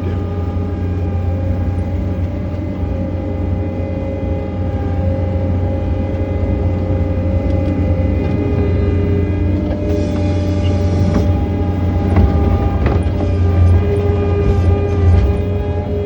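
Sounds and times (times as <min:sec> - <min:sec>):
diesel engine humming: 0:00.0 - 0:16.0.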